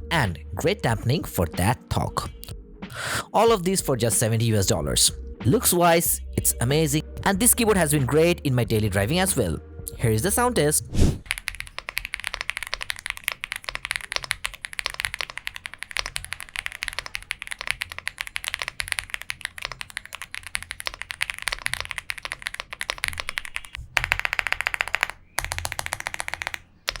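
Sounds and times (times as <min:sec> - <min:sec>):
keyboard typing: 0:06.4 - 0:27.0.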